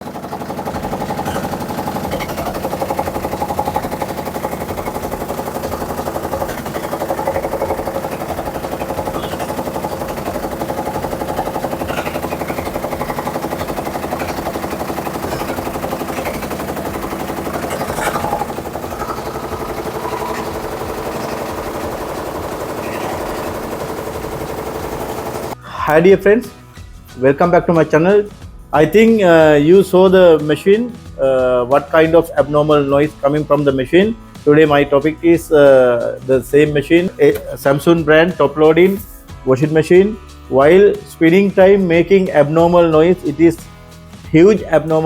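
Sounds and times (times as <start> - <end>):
washing machine spin banging: 0.0 - 25.6.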